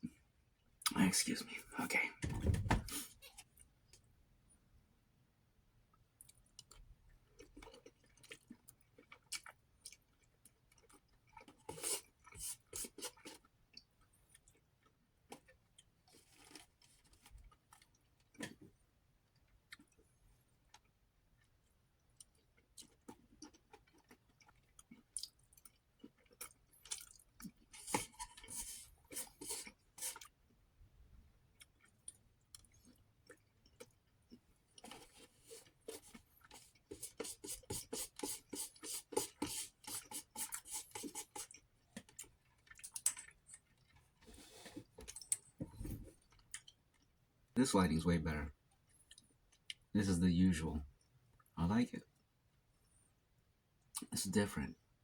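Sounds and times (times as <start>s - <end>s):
person chewing food: 6.2s - 30.6s, 31.4s - 47.2s, 48.6s - 49.9s.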